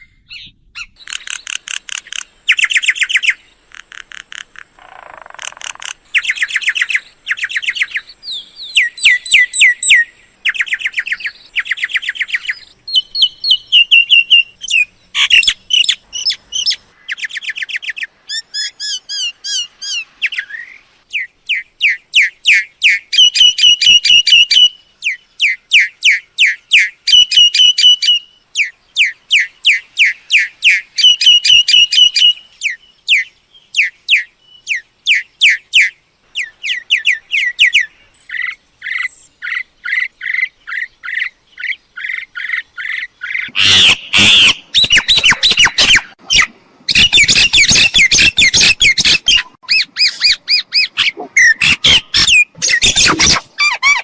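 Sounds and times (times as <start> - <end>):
myna calls: 42.0 - 54.0.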